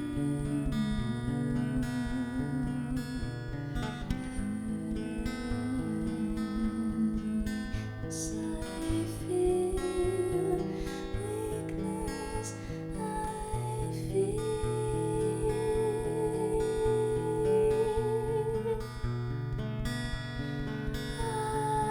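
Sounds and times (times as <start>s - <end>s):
acoustic guitar slow song: 0.0s - 21.9s.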